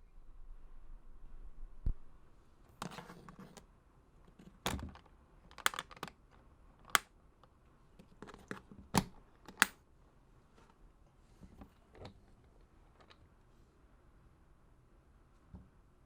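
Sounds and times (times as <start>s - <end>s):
mechanical keyboard clicks: 4.7s - 6.2s.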